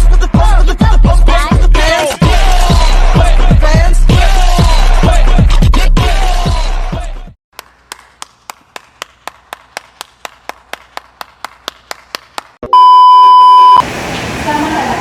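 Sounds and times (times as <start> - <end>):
loud steady electronic beep: 12.7 - 13.8.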